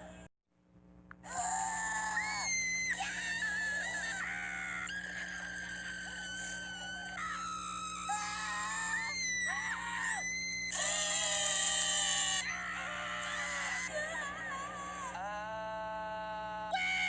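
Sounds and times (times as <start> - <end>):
high-pitched screams: 1.2 - 17.0.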